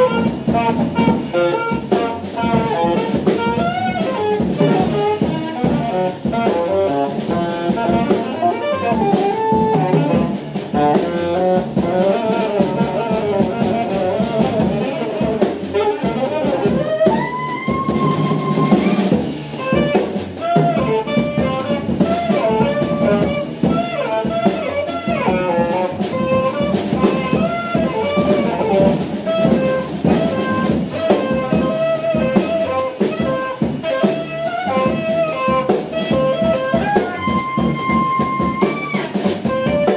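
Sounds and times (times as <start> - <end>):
drum kit: 0.0 - 39.9
saxophone playing: 0.0 - 39.9
guitar: 14.4 - 39.9.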